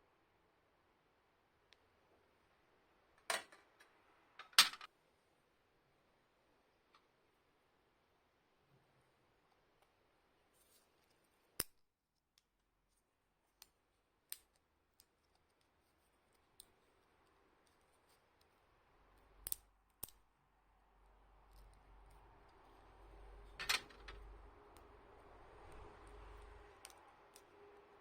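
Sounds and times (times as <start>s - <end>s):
faint low hum: 12.7s - 28.0s.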